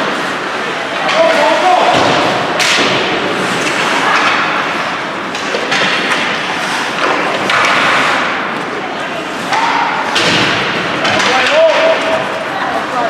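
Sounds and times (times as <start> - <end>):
knocks from sticks and puck: 1.0 - 8.6, 9.4 - 12.3
skate blades scraping ice: 3.0 - 10.2.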